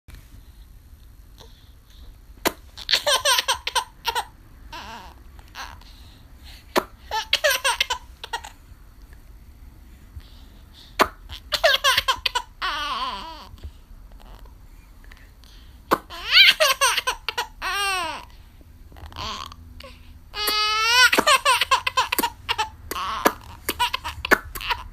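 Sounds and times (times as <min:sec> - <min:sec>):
baby laughing: 0:02.8 - 0:05.8, 0:07.1 - 0:08.6, 0:11.0 - 0:13.5, 0:15.9 - 0:18.3, 0:20.4 - 0:24.9.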